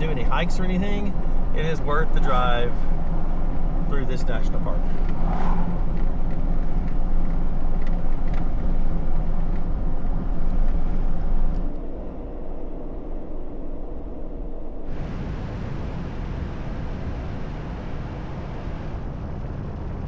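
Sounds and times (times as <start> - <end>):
car engine and tyre rumble: 0.0 - 20.0.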